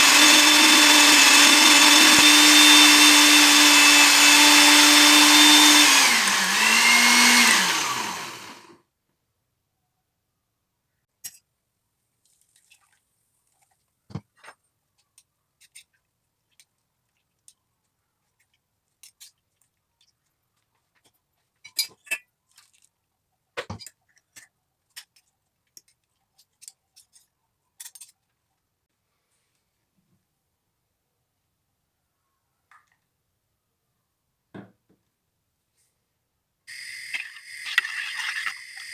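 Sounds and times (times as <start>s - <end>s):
utensils clicking and clinking: 36.7s - 38.9s.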